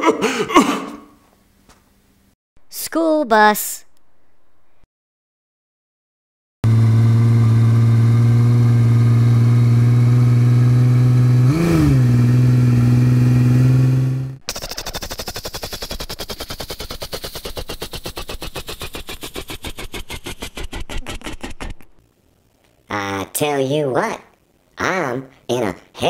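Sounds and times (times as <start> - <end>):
bus engine drone: 6.7 - 19.3.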